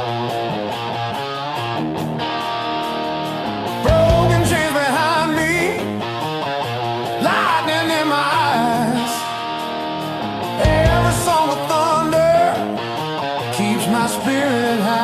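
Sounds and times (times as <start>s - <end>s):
rock music with guitars: 0.0s - 15.0s.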